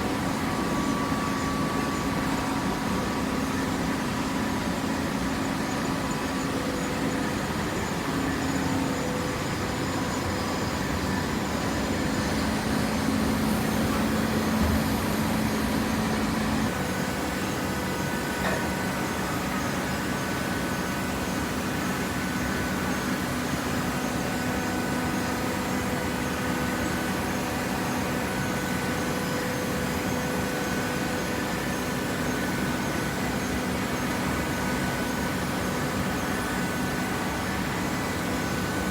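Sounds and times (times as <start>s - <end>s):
baler machine hum: 9.6s - 19.6s.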